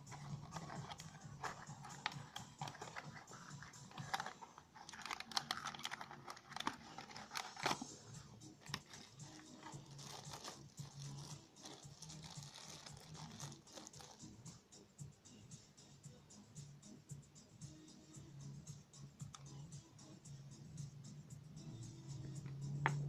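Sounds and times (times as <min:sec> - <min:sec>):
packaging crinkling: 0:00.1 - 0:07.9, 0:08.6 - 0:14.2.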